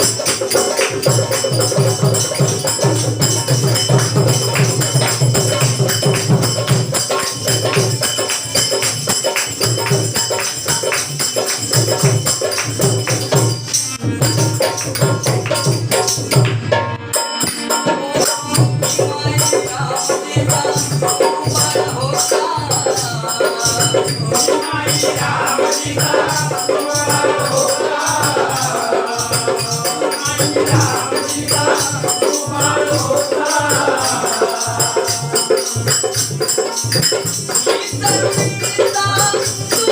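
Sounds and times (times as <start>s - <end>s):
jingling hand percussion: 0.0s - 39.9s
person singing: 37.6s - 39.9s.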